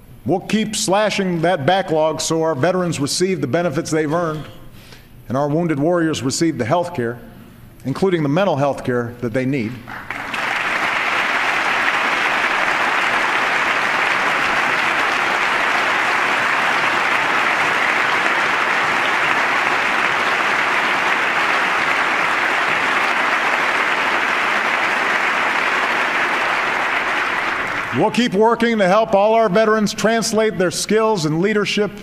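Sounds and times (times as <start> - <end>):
audience applauding: 9.9 - 28.3.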